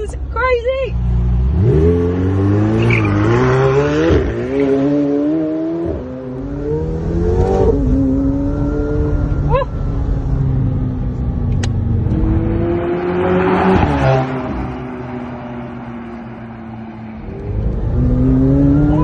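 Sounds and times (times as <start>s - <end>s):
car engine accelerating hard: 1.2s - 19.0s.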